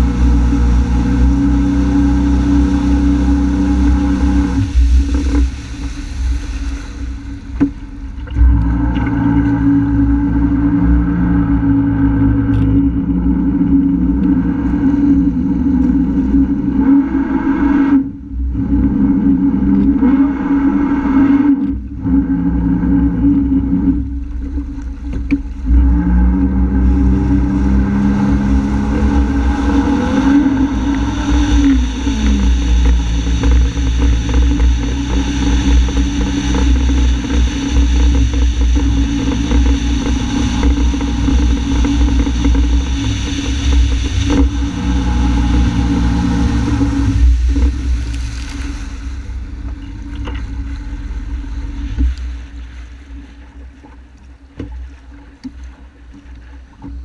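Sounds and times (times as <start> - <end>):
personal watercraft engine: 0.0 - 57.0.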